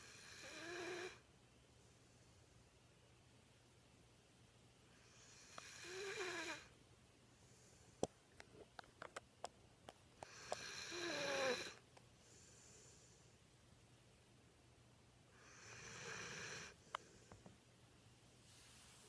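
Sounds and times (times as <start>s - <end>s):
dog snoring: 0.0s - 1.2s, 5.0s - 6.7s, 10.2s - 11.8s, 15.4s - 16.8s.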